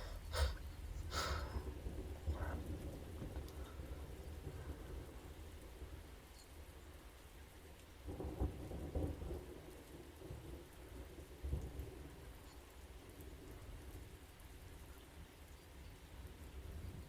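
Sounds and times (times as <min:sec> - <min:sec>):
thunder rumbling: 0:00.0 - 0:07.0, 0:08.0 - 0:12.4
steady rain: 0:00.0 - 0:17.0.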